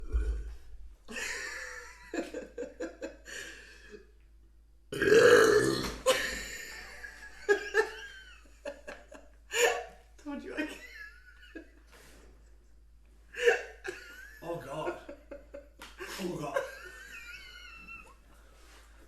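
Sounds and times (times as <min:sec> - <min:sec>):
throaty vocal sounds: 0:00.0 - 0:00.7, 0:04.9 - 0:06.0
woman burping: 0:04.9 - 0:06.1.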